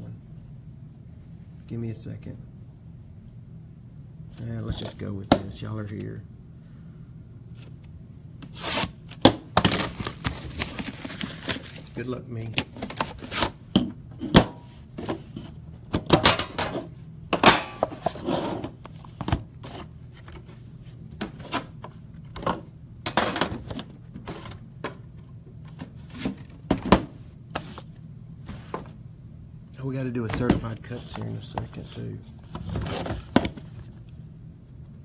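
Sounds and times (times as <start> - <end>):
low room hum: 0.0 - 35.0
cardboard and plastic rustling: 8.5 - 13.6, 17.8 - 22.6, 23.3 - 29.0, 30.2 - 34.1.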